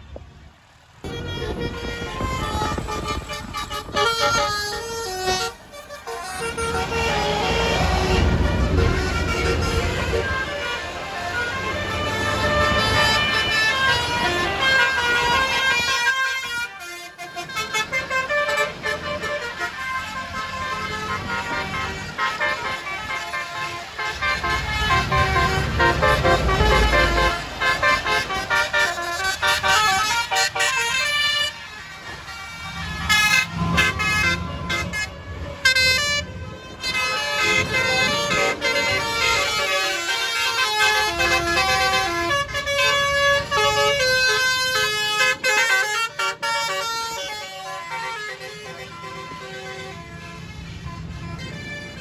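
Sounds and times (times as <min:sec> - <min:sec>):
bus engine rumble: 0:00.0 - 0:52.0
musical bus horn melodies: 0:01.0 - 0:52.0.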